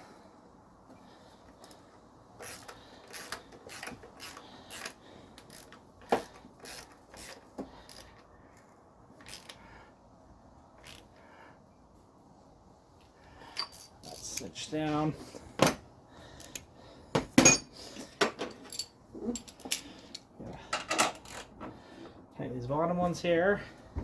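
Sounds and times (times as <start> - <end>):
hand ratchet clicking: 2.4 - 9.6.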